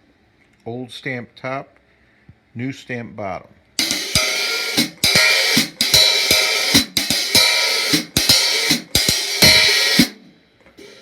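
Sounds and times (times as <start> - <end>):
hi-hats played in rhythm: 3.8 - 11.0.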